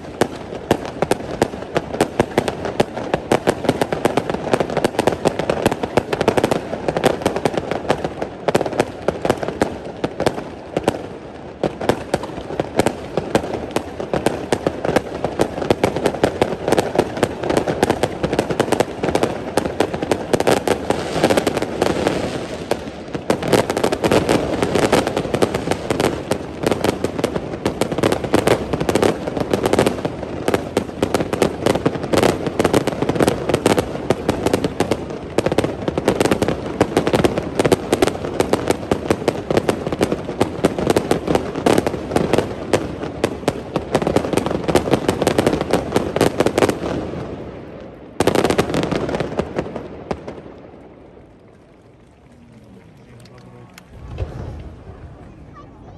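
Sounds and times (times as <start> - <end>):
fireworks crackling: 0.0 - 55.9
fireworks shells booming: 48.1 - 55.9.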